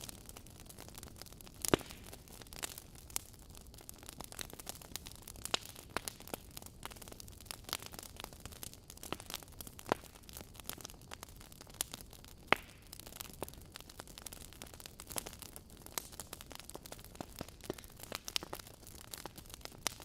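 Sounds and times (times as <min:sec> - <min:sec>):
loud fire pops: 0:00.0 - 0:03.3, 0:08.9 - 0:20.0
logs crackling in fireplace: 0:00.0 - 0:20.0.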